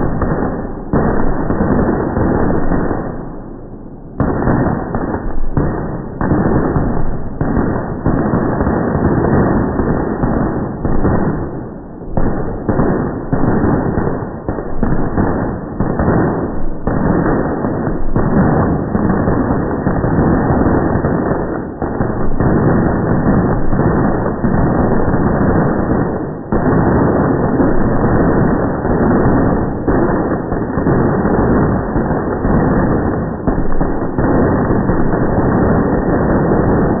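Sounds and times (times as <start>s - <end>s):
firecrackers going off: 0.0s - 37.0s.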